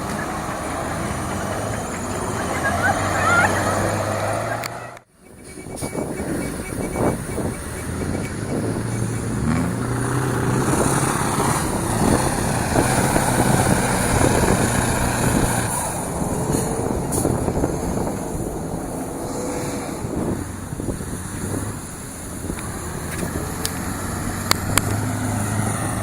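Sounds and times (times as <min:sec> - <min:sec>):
diesel truck engine pulling: 0:00.0 - 0:26.0
wind on microphone: 0:05.1 - 0:26.0.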